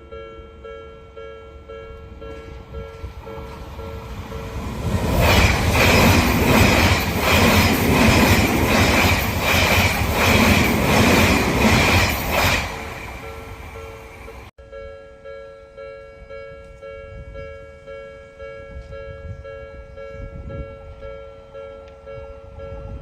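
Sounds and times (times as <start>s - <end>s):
level crossing warning bell: 0.0s - 7.2s, 13.0s - 23.0s
electric train passing: 0.1s - 14.5s.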